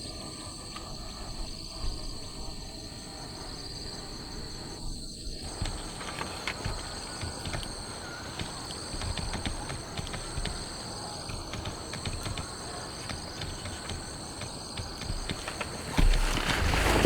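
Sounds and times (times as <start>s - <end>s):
insects trilling: 0.0s - 17.0s
raindrops tapping: 5.4s - 17.0s.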